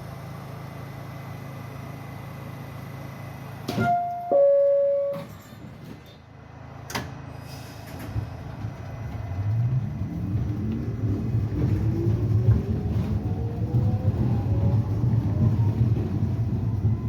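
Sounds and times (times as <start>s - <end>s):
train traction motors rising: 0.0s - 17.0s
train doors closing clunks: 3.6s - 8.8s
two-note door chime: 3.8s - 5.4s.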